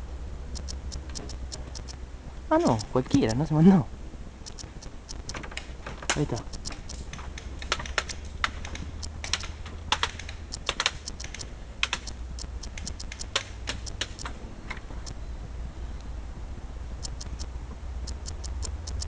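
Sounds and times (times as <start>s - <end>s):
low steady hum: 0.0s - 19.0s
airsoft gunfire clicks: 4.5s - 14.4s.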